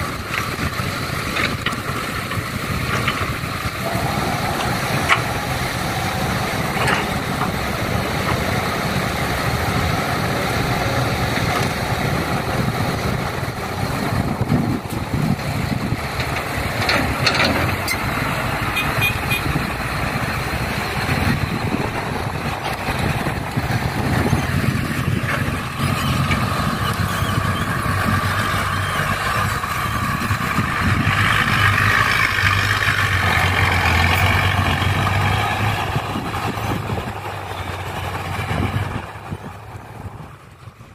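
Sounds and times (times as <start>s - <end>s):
heavy diesel engines running: 0.0s - 40.9s.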